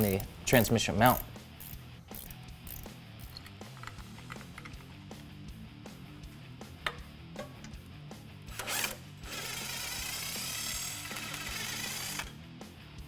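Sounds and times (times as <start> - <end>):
background music: 0.0 - 13.0
power tool spinning bolt: 1.1 - 4.9, 8.5 - 12.4.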